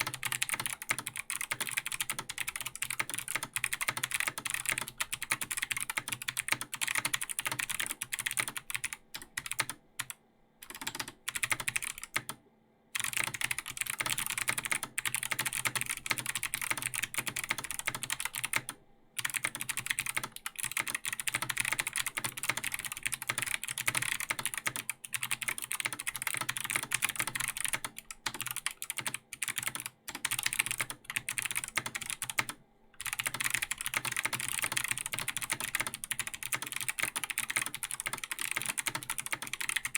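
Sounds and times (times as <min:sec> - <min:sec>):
typing on mechanical keyboard: 0:00.0 - 0:12.4, 0:13.0 - 0:39.9.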